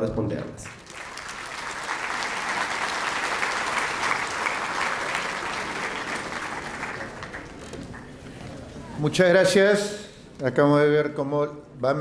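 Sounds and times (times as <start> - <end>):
audience applauding: 0.6 - 8.8.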